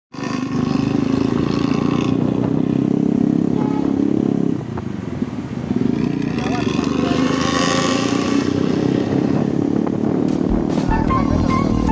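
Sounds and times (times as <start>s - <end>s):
bus diesel engine throbbing: 9.3s - 11.9s.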